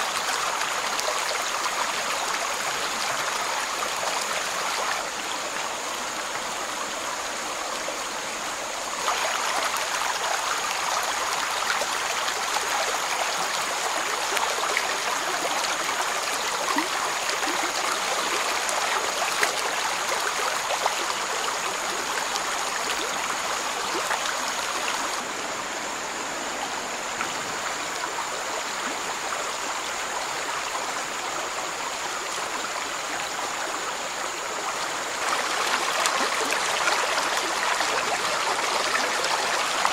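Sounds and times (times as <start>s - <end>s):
stream water over rocks: 0.0s - 39.9s.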